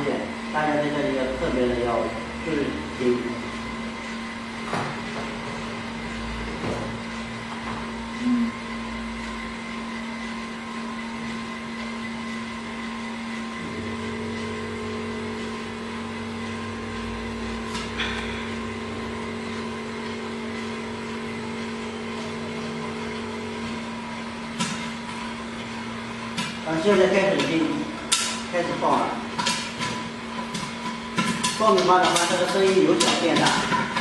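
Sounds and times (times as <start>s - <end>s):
popcorn machine electric hum: 0.0s - 34.0s
lower hum: 7.8s - 9.6s, 13.5s - 26.6s.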